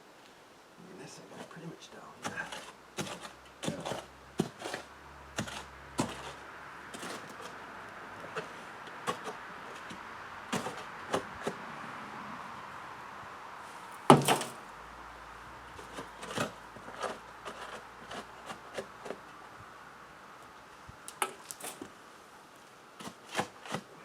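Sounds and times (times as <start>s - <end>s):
loud thump: 14.1s - 14.6s
wooden boards knocking and clattering: 14.1s - 14.6s.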